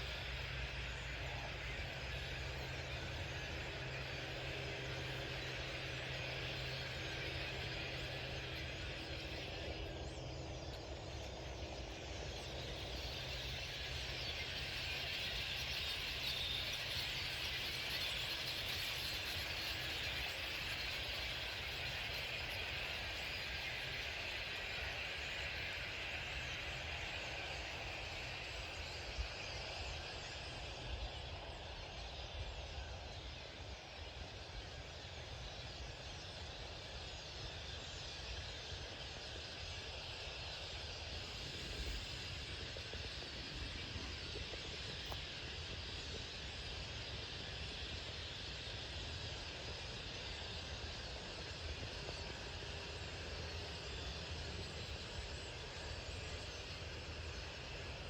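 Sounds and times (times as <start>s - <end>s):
flock of birds chirping: 0.0s - 58.0s.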